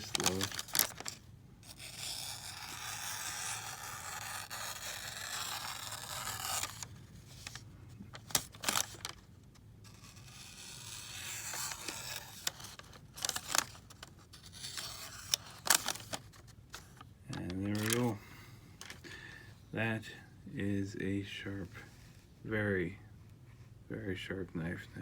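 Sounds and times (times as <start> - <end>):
knife slicing paper: 0.0 - 7.6, 9.9 - 13.8.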